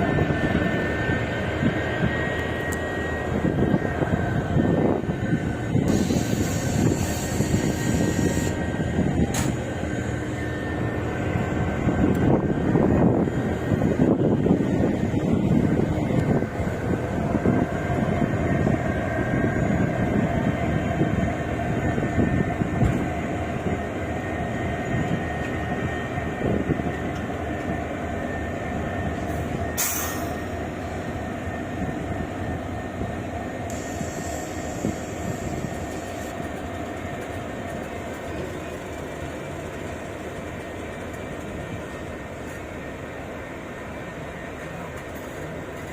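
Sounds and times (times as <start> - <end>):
train wheels rumbling on track: 0.0 - 45.9.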